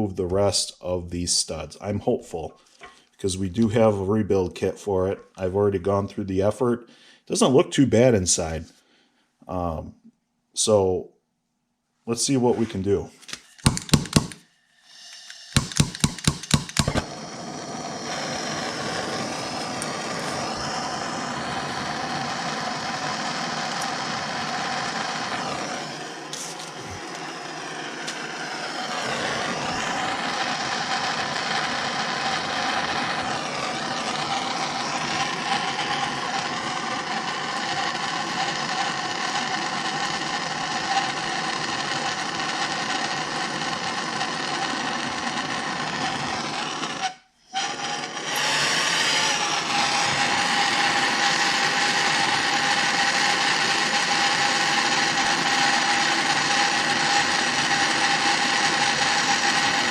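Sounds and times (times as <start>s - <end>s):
torch igniter clicking: 13.3s - 14.4s, 15.0s - 59.9s
torch flame hissing: 13.6s - 59.9s.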